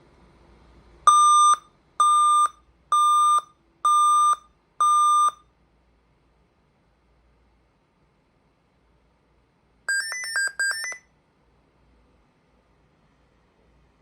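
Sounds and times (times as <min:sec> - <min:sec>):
computer speaker beeping: 0:09.9 - 0:11.0.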